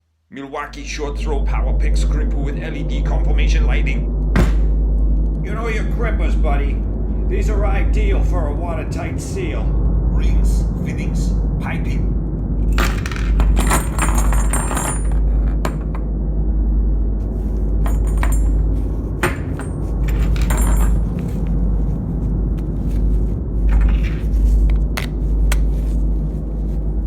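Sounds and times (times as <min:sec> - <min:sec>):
steady low hum: 0:00.0 - 0:27.0
metal parts clinking and rattling: 0:12.7 - 0:15.9, 0:17.8 - 0:21.6, 0:23.6 - 0:26.0.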